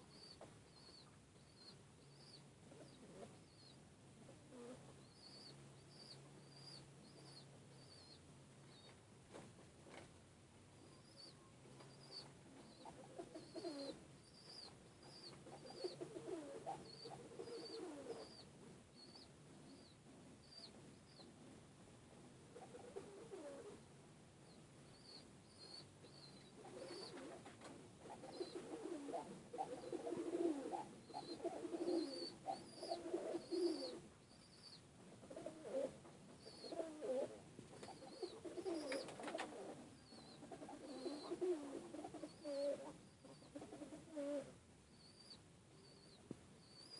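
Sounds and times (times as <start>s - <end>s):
pigeons cooing: 4.3s - 7.4s, 12.0s - 19.9s, 22.5s - 23.8s, 25.0s - 46.0s.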